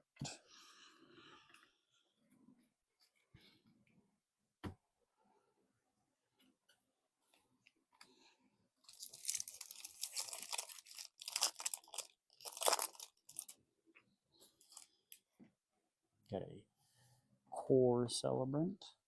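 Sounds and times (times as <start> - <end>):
wrapper tearing and crinkling: 8.9 - 13.6.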